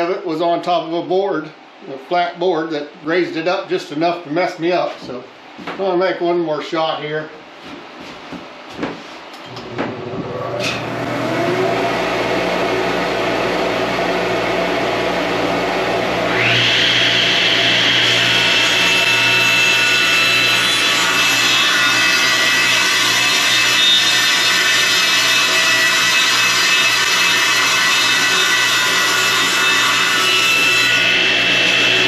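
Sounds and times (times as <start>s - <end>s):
table saw whining: 9.5s - 32.0s
saw blade cutting wood: 16.3s - 32.0s.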